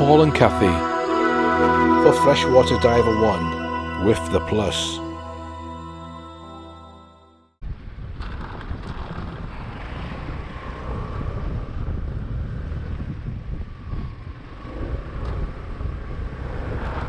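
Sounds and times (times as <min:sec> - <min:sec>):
wind buffeting microphone: 0:07.6 - 0:17.0
vehicle rumbling: 0:07.7 - 0:17.0.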